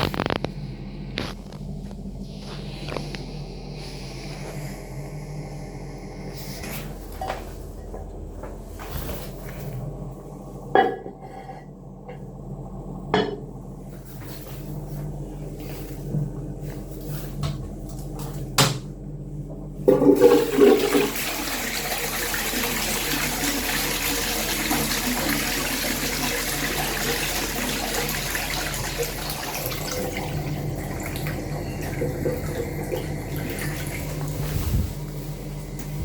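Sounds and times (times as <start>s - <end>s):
toilet water rushing: 19.8s - 34.6s.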